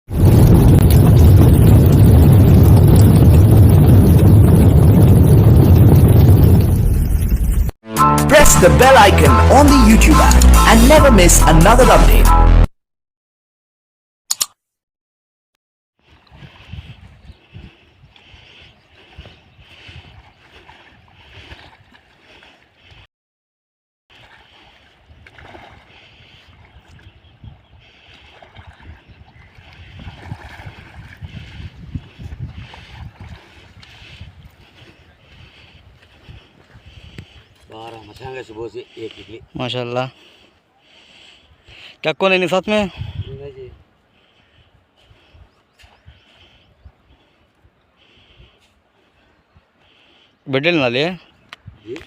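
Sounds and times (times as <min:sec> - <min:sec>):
wind rumbling on microphone: 0:00.1 - 0:07.8, 0:16.0 - 0:23.0, 0:24.2 - 0:38.3, 0:42.9 - 0:50.1, 0:51.4 - 0:52.0
water lapping around boat: 0:16.0 - 0:23.1, 0:24.1 - 0:42.0, 0:43.8 - 0:50.4.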